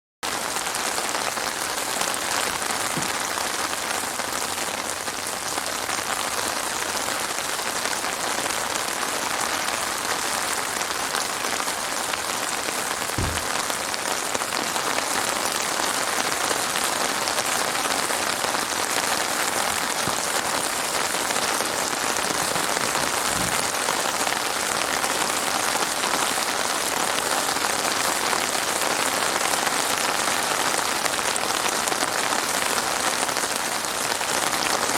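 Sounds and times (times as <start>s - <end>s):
heavy rain falling: 0.2s - 34.9s
brief low thuds: 13.2s - 13.8s.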